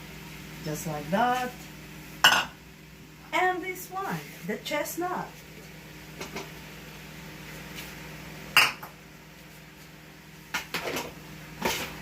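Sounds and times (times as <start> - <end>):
cookware clanking in a pan: 2.2 - 2.6, 8.6 - 9.0.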